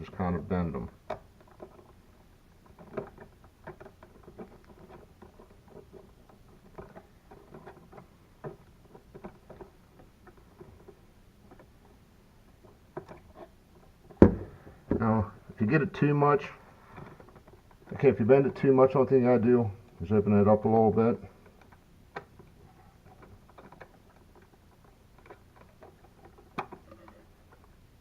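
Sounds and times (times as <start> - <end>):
sharp knock: 14.2 - 14.5.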